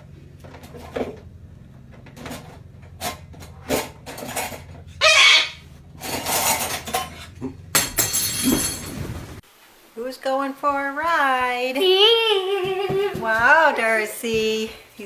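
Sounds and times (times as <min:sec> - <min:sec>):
hard objects clattering: 0:00.3 - 0:05.0, 0:05.8 - 0:09.2.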